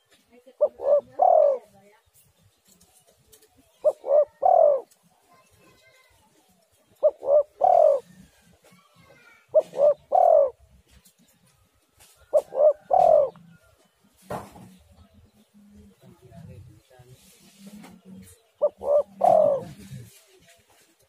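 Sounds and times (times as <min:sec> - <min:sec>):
dove cooing: 0:00.6 - 0:01.8, 0:03.8 - 0:05.0, 0:06.9 - 0:10.8, 0:12.2 - 0:13.7, 0:17.5 - 0:20.2.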